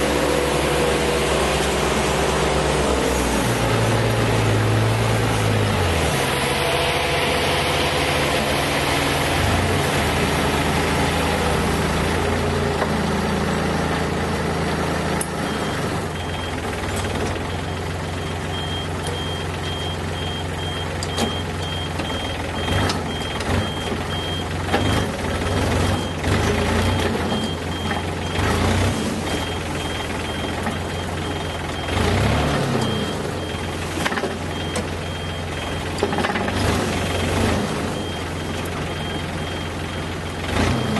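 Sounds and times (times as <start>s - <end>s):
excavator diesel engine running: 0.0s - 40.9s
reversing alarm beeping: 15.5s - 16.7s, 17.4s - 40.9s
clunks: 21.0s - 25.1s, 33.9s - 35.0s.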